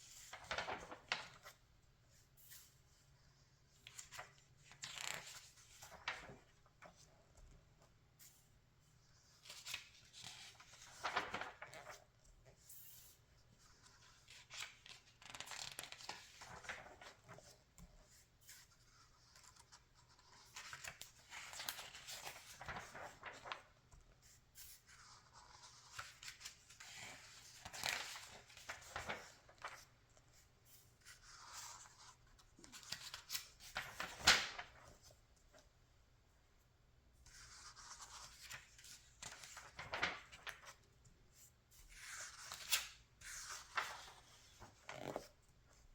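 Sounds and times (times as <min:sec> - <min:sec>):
magazine pages turning: 0:00.2 - 0:01.6, 0:03.8 - 0:06.4, 0:09.4 - 0:12.0, 0:13.9 - 0:17.6, 0:19.3 - 0:23.7, 0:25.0 - 0:29.9, 0:31.3 - 0:35.6, 0:37.4 - 0:40.8, 0:41.9 - 0:45.3.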